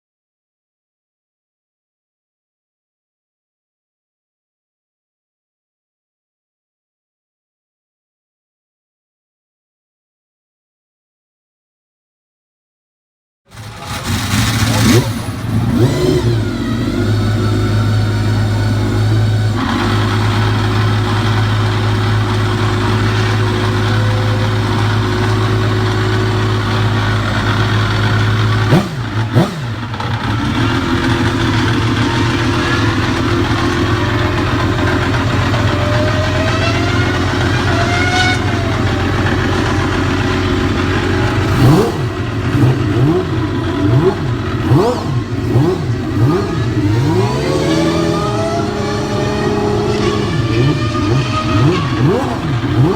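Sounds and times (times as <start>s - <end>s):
racing car engine revving: 13.5s - 52.9s.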